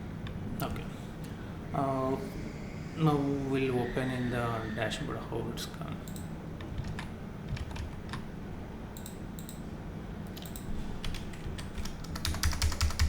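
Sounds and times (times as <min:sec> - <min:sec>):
steady low hum: 0:00.0 - 0:13.0
keyboard typing: 0:10.3 - 0:13.0.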